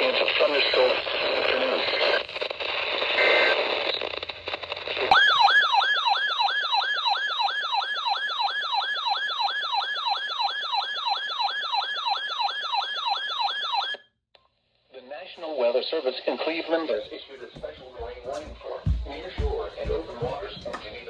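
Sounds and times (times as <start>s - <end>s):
static-laden radio broadcast: 0.0s - 4.1s, 15.4s - 21.0s
electronic siren alert tone: 5.1s - 14.0s.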